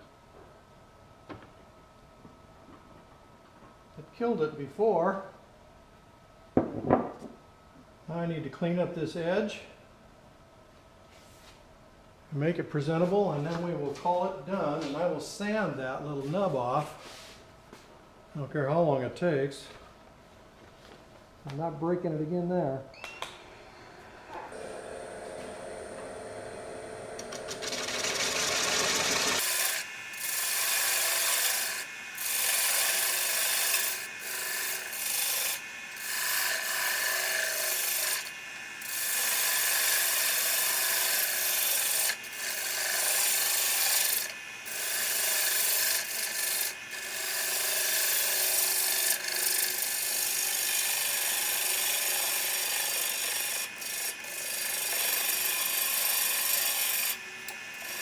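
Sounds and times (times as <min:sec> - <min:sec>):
tool rasping against spinning wood: 0:27.2 - 0:58.0.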